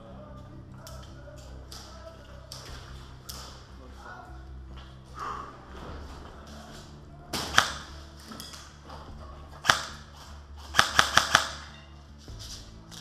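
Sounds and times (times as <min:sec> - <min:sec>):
airsoft gun shots: 0:07.4 - 0:07.9, 0:09.6 - 0:10.0, 0:10.7 - 0:11.7.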